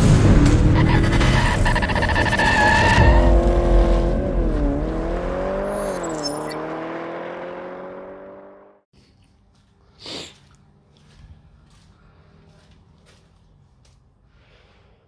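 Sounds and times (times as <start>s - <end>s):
car engine revving: 0.0s - 8.8s.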